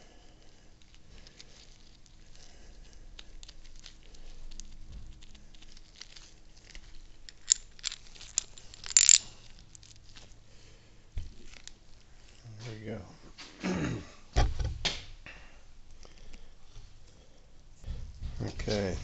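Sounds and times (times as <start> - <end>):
faint rustling of small parts: 0.0 - 13.5
light clicks of small parts: 3.2 - 10.3
metal parts clattering: 7.3 - 10.0.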